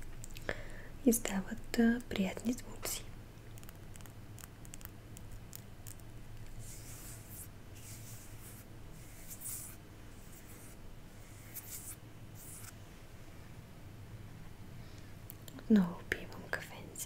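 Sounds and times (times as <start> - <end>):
soft scratchy rubbing: 3.6 - 13.3.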